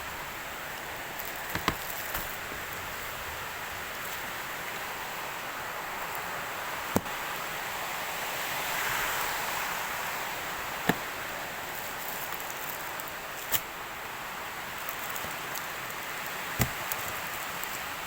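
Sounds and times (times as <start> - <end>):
steady hiss: 0.0 - 18.0.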